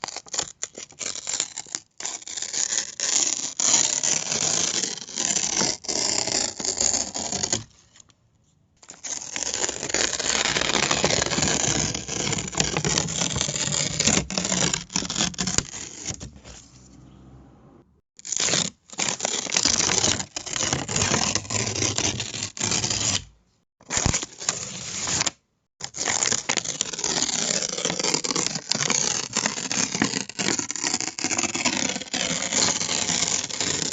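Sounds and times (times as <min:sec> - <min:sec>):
paper tearing: 0:00.0 - 0:08.0, 0:08.8 - 0:16.9, 0:18.2 - 0:33.9.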